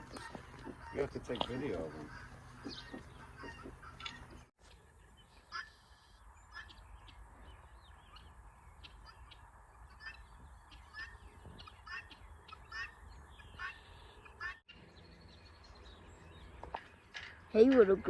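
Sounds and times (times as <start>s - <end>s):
goose honking: 0.0s - 4.5s.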